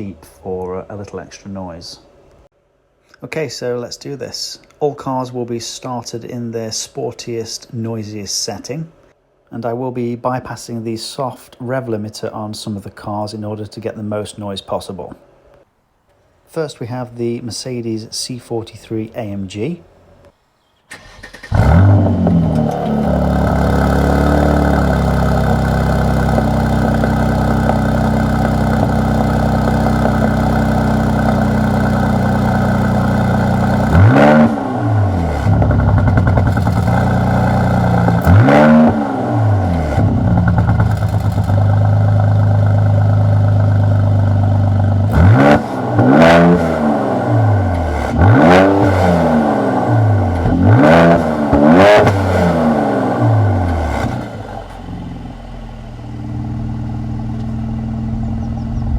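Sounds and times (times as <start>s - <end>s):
car engine starting and revving: 20.9s - 58.9s.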